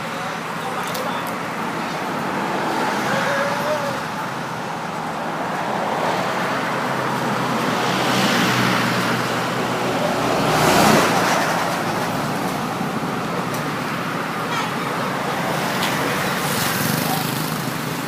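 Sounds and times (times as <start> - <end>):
vehicles passing on a road: 0.0 - 18.0.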